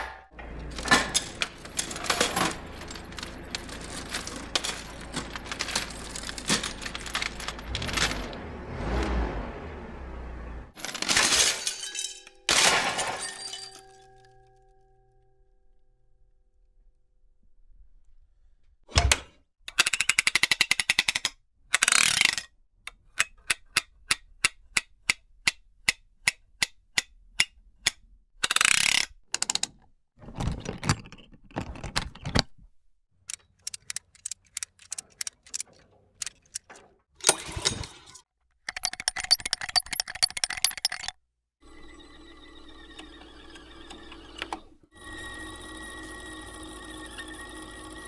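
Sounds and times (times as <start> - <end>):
steady series of clicks: 33.2 - 37.0.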